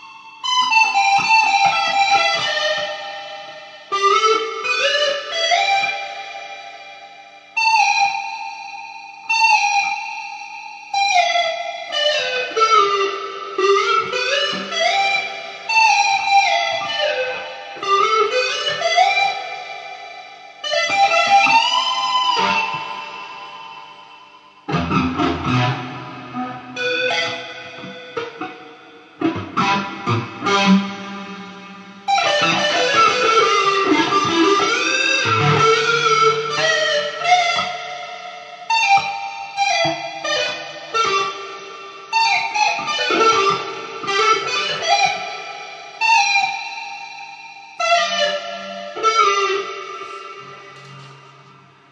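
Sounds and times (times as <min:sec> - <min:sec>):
guitar playing: 0:12.0 - 0:19.4, 0:20.7 - 0:23.8, 0:24.6 - 0:46.8, 0:47.7 - 0:51.9.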